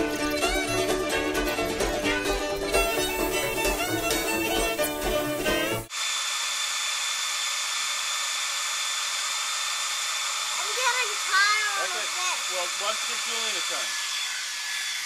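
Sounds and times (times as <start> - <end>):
fiddle music: 0.0 - 5.9
hair dryer running with faint whine: 2.8 - 15.0.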